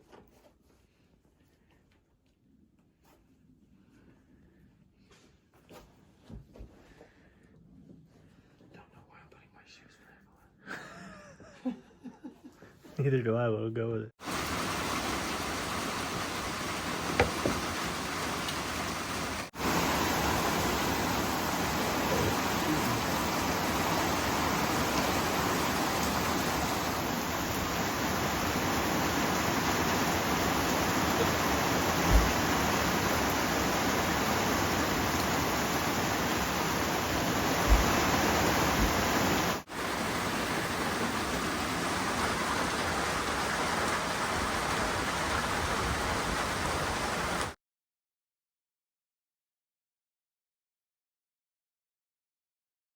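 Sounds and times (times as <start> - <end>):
steady rain falling: 14.2 - 47.6
low thumps: 17.0 - 17.9, 37.5 - 39.3.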